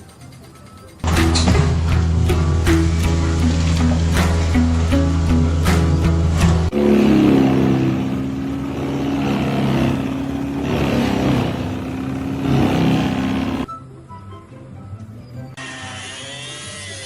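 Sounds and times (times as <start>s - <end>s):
engine droning: 1.1s - 13.7s.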